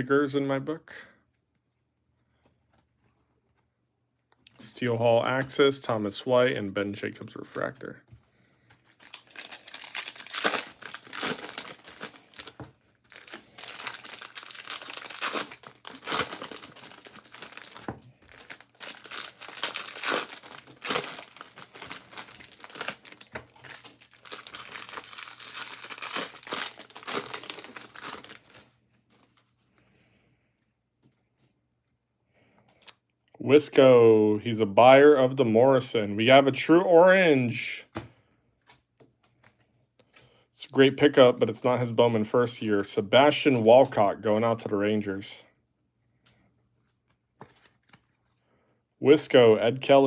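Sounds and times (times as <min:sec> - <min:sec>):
card pack wrappers tearing and crinkling: 0:08.8 - 0:28.7.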